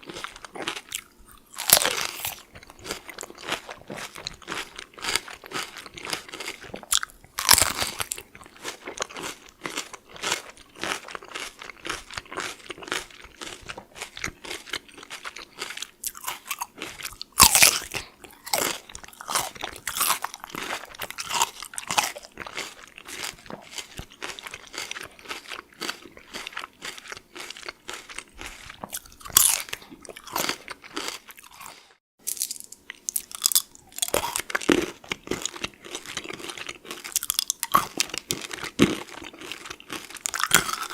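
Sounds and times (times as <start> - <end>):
chewing raw cucumber: 0.0 - 31.9, 32.8 - 40.9
crunching candies: 0.0 - 40.9.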